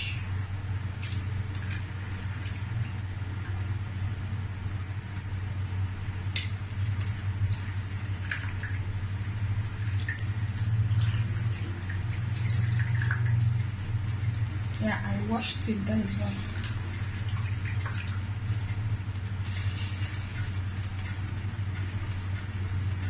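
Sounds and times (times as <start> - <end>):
steady low hum: 0.0 - 23.0
soft wet splashes: 6.4 - 23.0.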